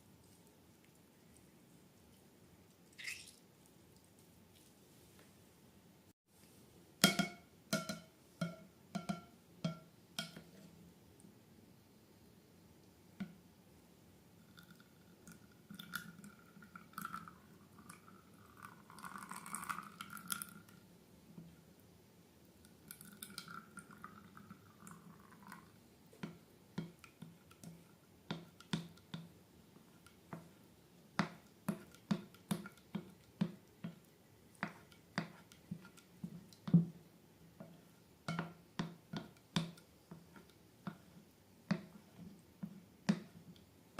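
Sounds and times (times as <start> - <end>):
wet pouring slime: 2.7 - 4.6, 14.5 - 20.8.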